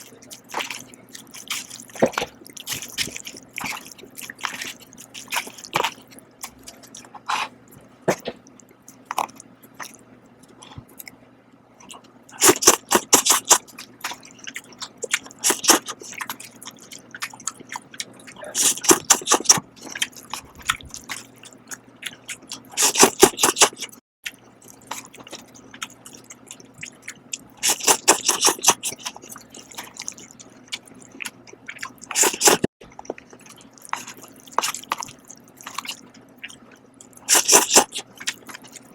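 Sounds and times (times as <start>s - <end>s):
wet chewing of noodles: 0.0s - 38.9s
slurping noodles: 12.3s - 13.7s, 15.4s - 16.2s, 18.4s - 20.0s, 22.8s - 24.0s, 27.6s - 30.0s, 32.0s - 32.7s, 37.2s - 38.7s.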